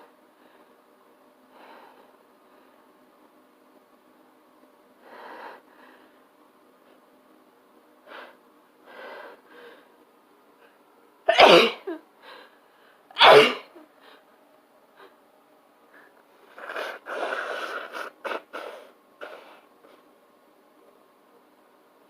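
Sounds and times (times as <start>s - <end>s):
quiet breaths: 0.0s - 11.0s, 12.1s - 13.1s, 13.8s - 21.1s
person sneezing loudly: 11.3s - 11.9s, 13.2s - 13.8s, 16.6s - 19.6s.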